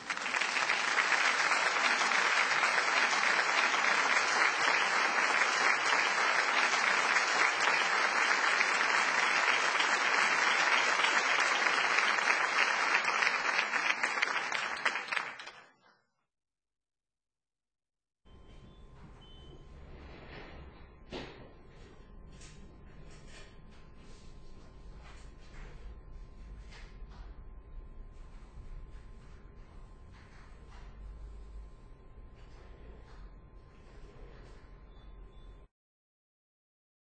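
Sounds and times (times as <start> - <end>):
audience applauding: 0.0 - 15.9.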